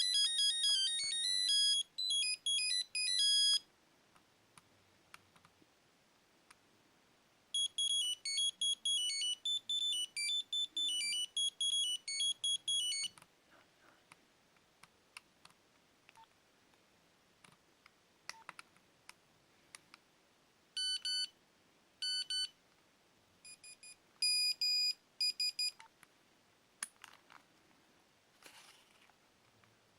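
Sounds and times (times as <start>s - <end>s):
phone beeping ringtone melody: 0.0s - 3.7s, 7.6s - 13.2s, 20.8s - 21.3s, 22.0s - 22.5s.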